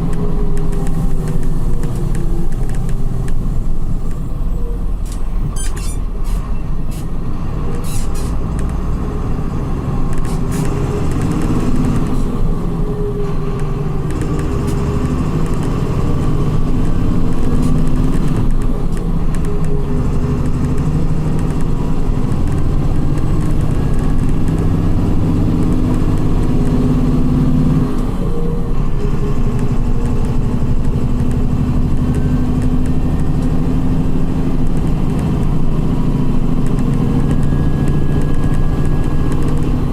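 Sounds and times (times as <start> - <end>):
sharp clicks: 0.0 - 4.2, 7.7 - 9.4, 10.0 - 12.6, 13.4 - 25.0, 29.3 - 33.7, 34.6 - 39.9
bus engine accelerating: 0.0 - 39.9.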